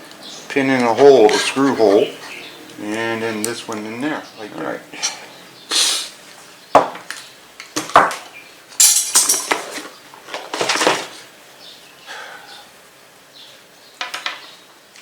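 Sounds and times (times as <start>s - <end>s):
sharp knocks: 6.8s - 7.1s
plastic brackets clicking and clattering: 7.0s - 11.2s.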